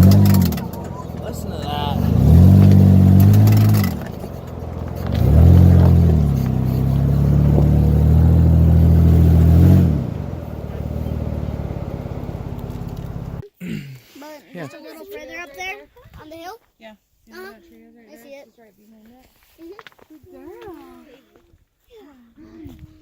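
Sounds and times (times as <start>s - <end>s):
car engine revving: 0.0s - 13.4s
engine pulsing idle: 0.0s - 13.4s.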